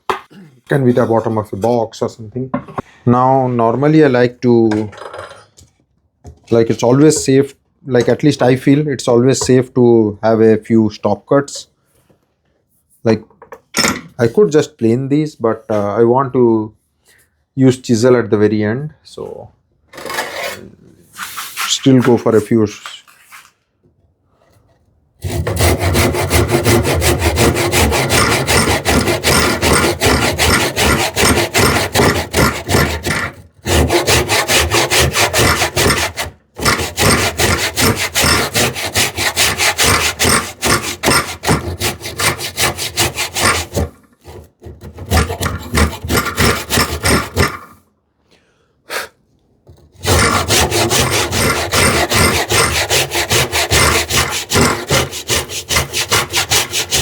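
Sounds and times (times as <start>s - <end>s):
hand saw rasping strokes: 20.0s - 22.4s, 25.2s - 47.8s, 49.7s - 57.0s.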